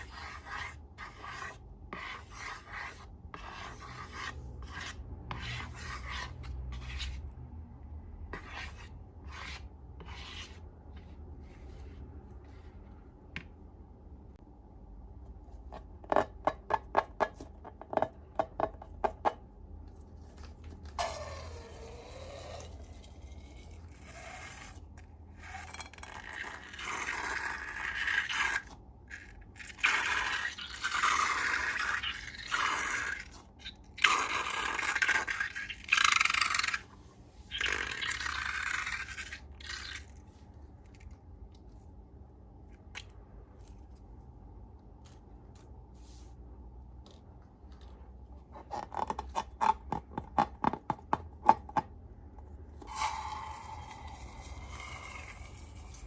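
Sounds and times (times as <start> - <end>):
slime squishing and scraping: 0.0 - 7.4, 8.3 - 13.0, 19.8 - 42.0.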